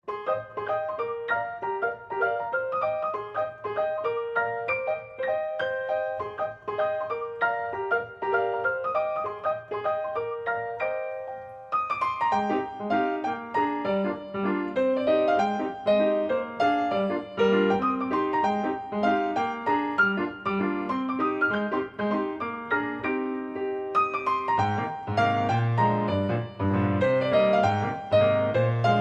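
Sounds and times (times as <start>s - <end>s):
gentle piano music: 0.0s - 29.0s.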